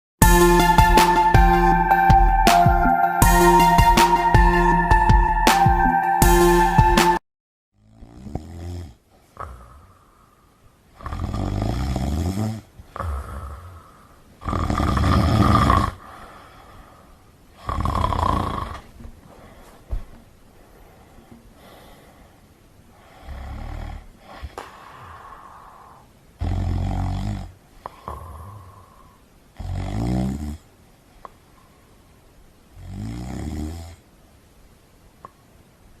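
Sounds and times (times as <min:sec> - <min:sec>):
cat snoring: 0:07.8 - 0:10.2, 0:10.9 - 0:16.2, 0:17.6 - 0:18.9, 0:23.0 - 0:30.6, 0:32.8 - 0:34.0.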